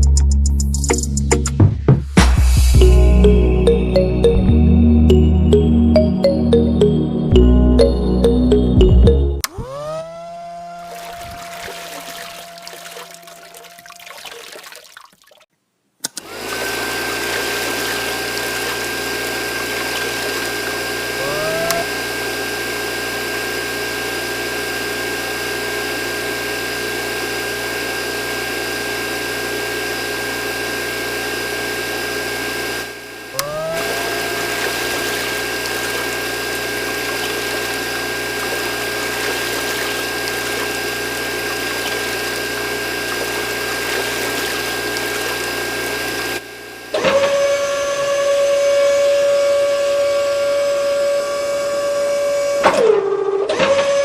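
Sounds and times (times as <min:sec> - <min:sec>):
water noise: 0:08.8 - 0:15.5, 0:16.4 - 0:22.0, 0:33.4 - 0:46.5
electric water pump whining: 0:09.4 - 0:14.8, 0:16.0 - 0:54.0.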